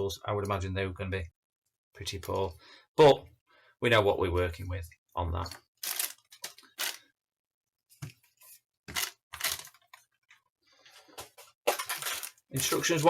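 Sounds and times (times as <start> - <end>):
small objects clicking and knocking: 5.8 - 7.1, 8.9 - 10.0, 11.6 - 13.0.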